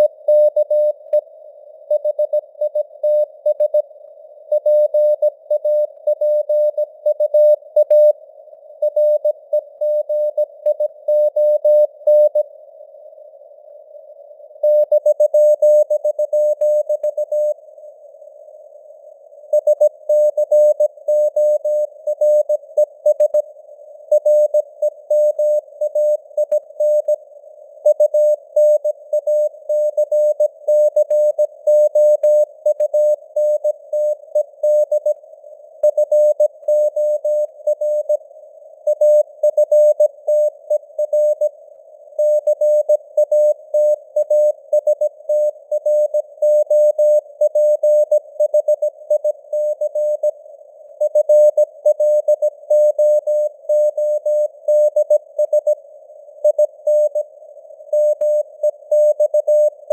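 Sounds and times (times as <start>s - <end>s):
faint radio noise hiss: 11.9s - 14.6s, 15.4s - 59.9s
morse code beeps: 19.6s - 23.4s, 58.0s - 59.9s.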